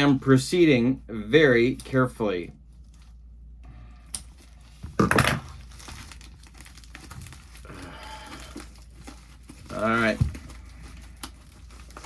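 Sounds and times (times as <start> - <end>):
packaging crinkling and tearing: 4.2 - 12.0.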